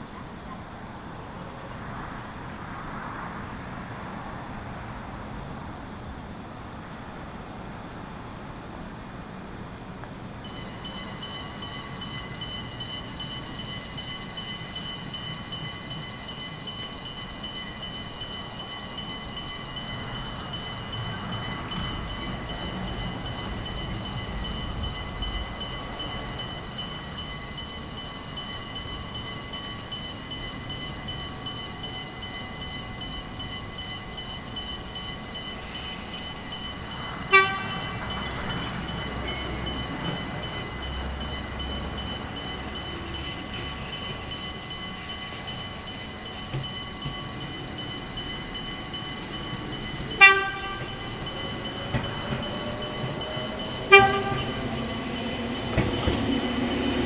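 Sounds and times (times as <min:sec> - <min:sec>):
high ringing tones: 0:10.4 - 0:57.0
train motor whine: 0:36.1 - 0:57.0
train horn toots: 0:37.2 - 0:39.8, 0:50.1 - 0:57.0.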